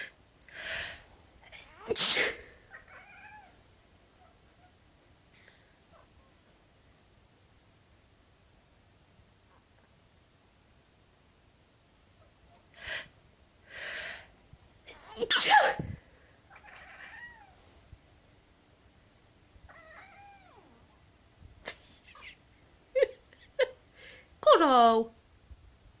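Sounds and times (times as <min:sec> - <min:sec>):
person sneezing: 0:01.9 - 0:02.6, 0:15.3 - 0:16.0
cat meowing: 0:02.7 - 0:03.6, 0:16.5 - 0:17.6, 0:19.7 - 0:21.0.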